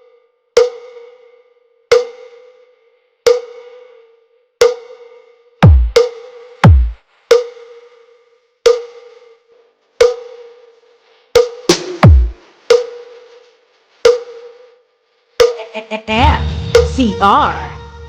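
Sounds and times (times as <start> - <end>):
electronic percussion hits: 5.6 - 6.0, 15.4 - 18.0
deep bass drop sliding down: 16.1 - 17.8.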